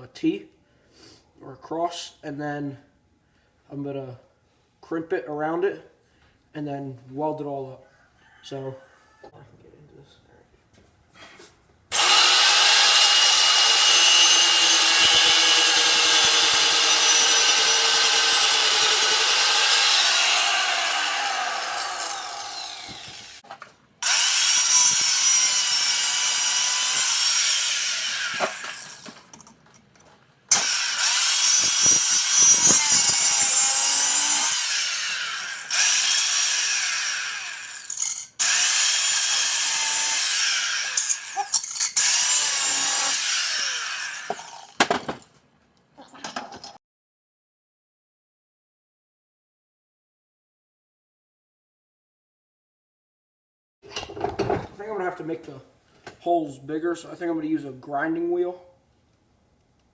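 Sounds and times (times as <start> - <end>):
power tool cutting metal pipe: 11.9 - 23.4, 24.0 - 29.2, 30.5 - 44.8.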